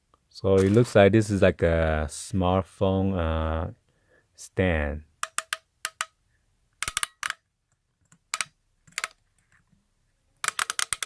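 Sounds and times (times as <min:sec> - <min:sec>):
plastic kickstand clicks: 0:10.4 - 0:11.0.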